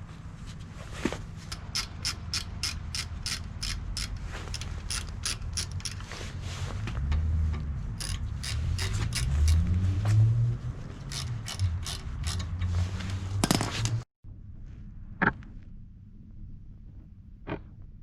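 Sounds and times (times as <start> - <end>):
ratchet wrench clicking: 1.4 - 6.2, 8.0 - 9.8, 11.0 - 12.7.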